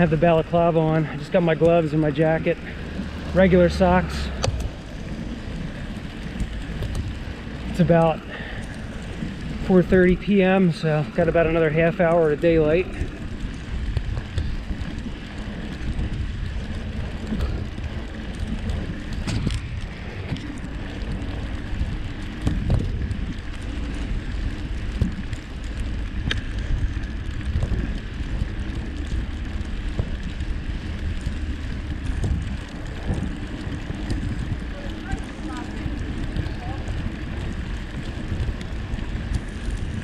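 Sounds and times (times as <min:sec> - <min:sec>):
bicycle tires rolling through snow: 0:00.0 - 0:40.0
bike clicks: 0:00.0 - 0:40.0
wind on microphone: 0:12.6 - 0:40.0.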